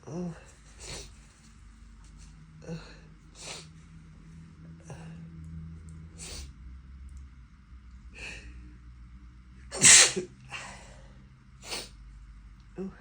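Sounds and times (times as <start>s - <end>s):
person sneezing loudly: 9.7s - 10.3s.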